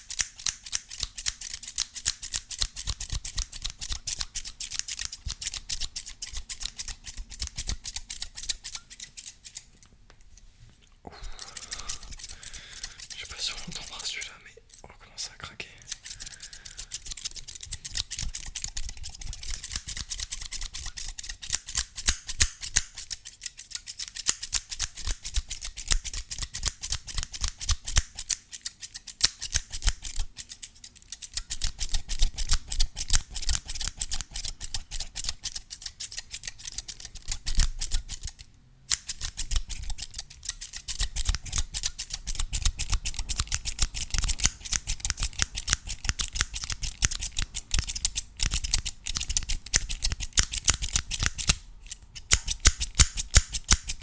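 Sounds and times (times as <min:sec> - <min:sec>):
scissors snipping: 0:00.0 - 0:09.9, 0:11.2 - 0:14.8, 0:15.8 - 0:54.0.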